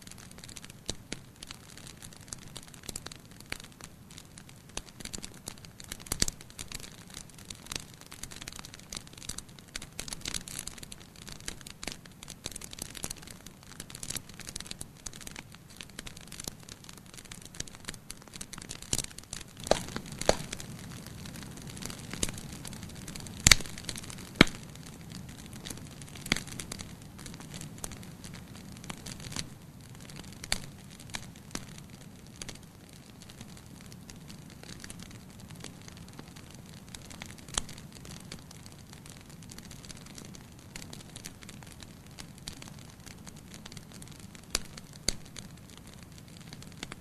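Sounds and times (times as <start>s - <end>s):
fire crackling and popping: 0.0s - 47.0s
fire hissing: 19.4s - 27.0s.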